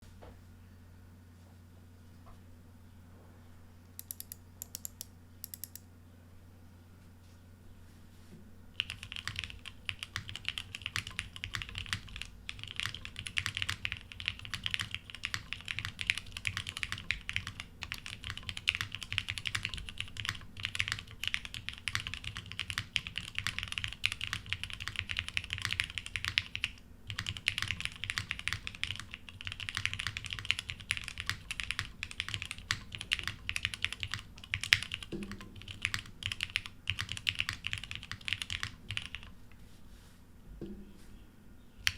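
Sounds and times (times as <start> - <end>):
fast typing on mechanical keyboard: 8.8 - 39.3.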